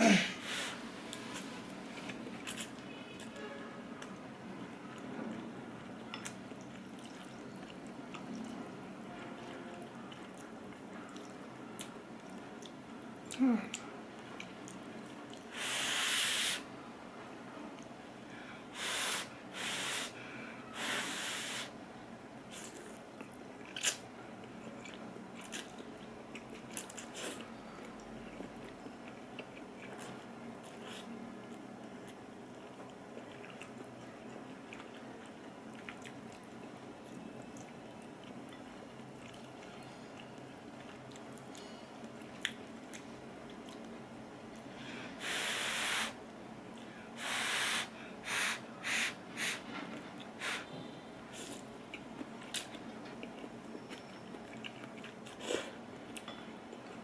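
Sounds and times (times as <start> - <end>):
quiet chewing: 4.9 - 8.6, 9.2 - 15.5, 22.5 - 44.7, 49.4 - 57.0
airy hissing bursts: 15.5 - 16.7, 18.8 - 20.2, 20.8 - 21.7, 45.2 - 46.2, 47.2 - 49.6.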